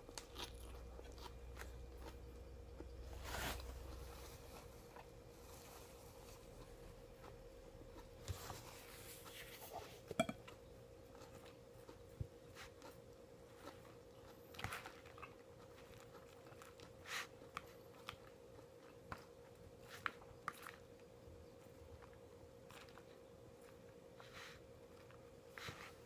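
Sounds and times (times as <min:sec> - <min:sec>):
person chewing food: 0:00.0 - 0:09.0, 0:09.8 - 0:26.0
steady low hum: 0:00.0 - 0:26.0.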